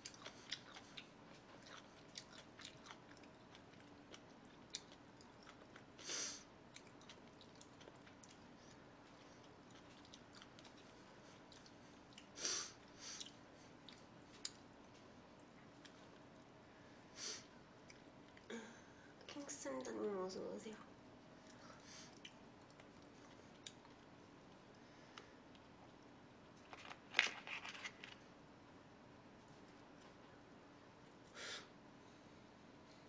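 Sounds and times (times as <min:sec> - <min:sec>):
person chewing: 0:00.0 - 0:16.2, 0:21.4 - 0:24.1.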